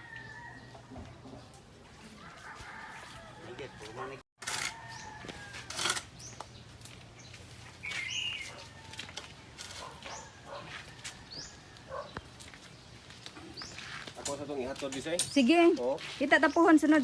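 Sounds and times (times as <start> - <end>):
birds chirping: 4.8 - 8.9, 9.8 - 17.0.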